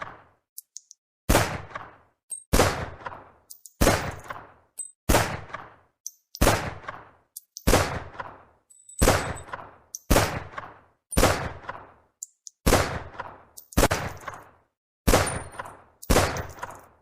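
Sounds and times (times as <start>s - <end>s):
small clicks: 0.6s - 1.0s, 3.5s - 5.0s, 7.4s - 7.7s, 12.2s - 12.6s
pistol shots: 1.3s - 17.0s.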